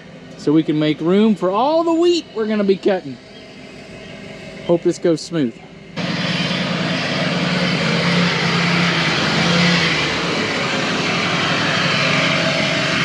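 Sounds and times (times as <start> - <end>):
vehicle engine hum: 0.0 - 13.0.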